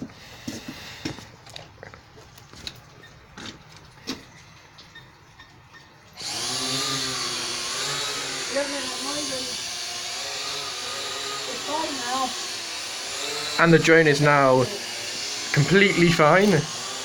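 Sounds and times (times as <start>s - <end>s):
drone propellers whirring: 6.2s - 17.0s.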